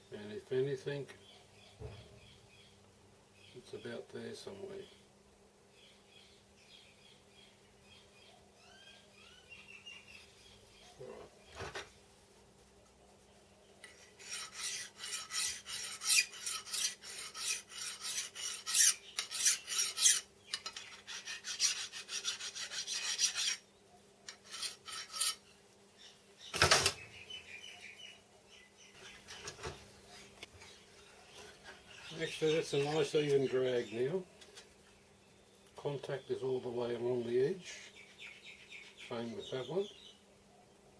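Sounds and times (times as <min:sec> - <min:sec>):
metal rasping on metal: 0:13.8 - 0:23.6, 0:24.3 - 0:25.5.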